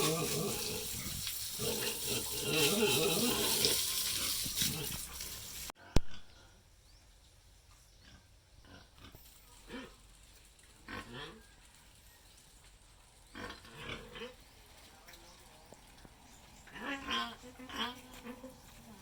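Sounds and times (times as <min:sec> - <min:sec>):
pigs grunting faintly: 0:00.0 - 0:06.7, 0:08.0 - 0:10.1, 0:10.8 - 0:11.6.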